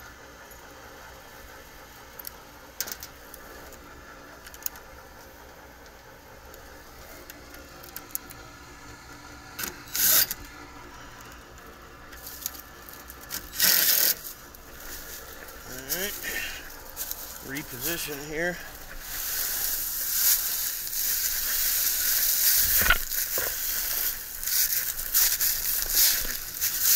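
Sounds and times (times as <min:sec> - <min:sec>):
steady low hum: 0:00.0 - 0:26.9
hand tools clicking and clinking: 0:12.2 - 0:26.9
loud scrape: 0:13.5 - 0:26.9.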